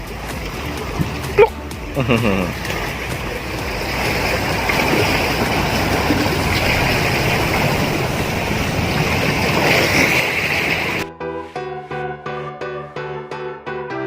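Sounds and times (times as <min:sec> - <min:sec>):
sea waves washing on shore: 0:00.0 - 0:11.1.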